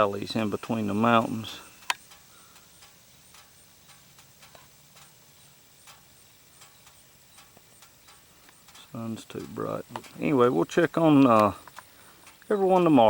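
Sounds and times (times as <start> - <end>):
soft irregular ticks: 0.0 - 13.0.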